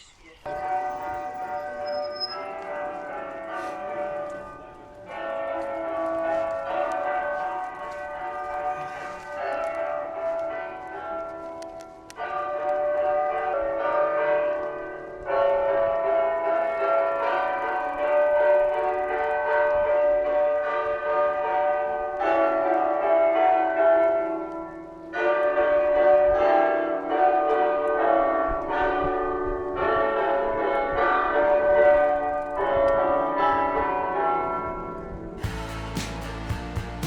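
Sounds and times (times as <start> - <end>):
bell-like ringing chords: 0.4 - 10.1.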